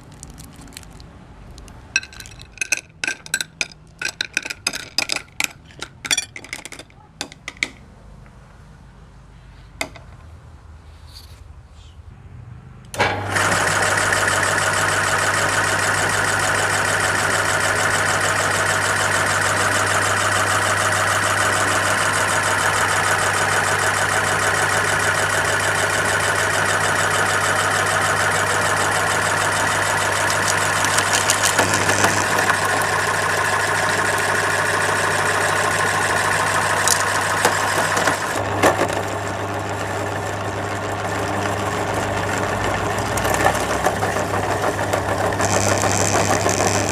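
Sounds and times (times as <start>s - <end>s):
hard candy cracking: 0.0s - 7.8s, 29.5s - 34.3s
meat grinder motor hum: 13.0s - 46.9s.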